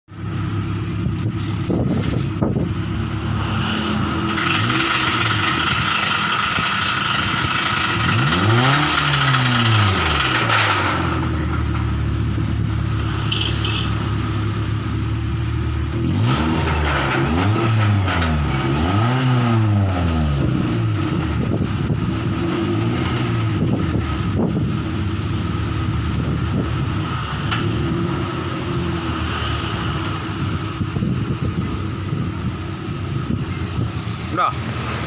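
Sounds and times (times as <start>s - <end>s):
motorcycle engine revving: 1.3s - 11.4s.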